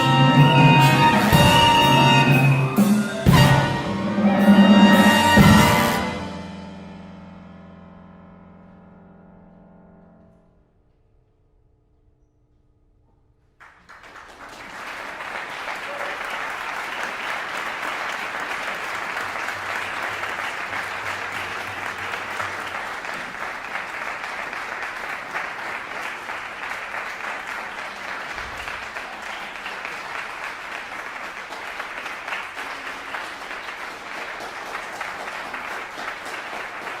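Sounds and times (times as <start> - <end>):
audience applauding: 13.6 - 37.0.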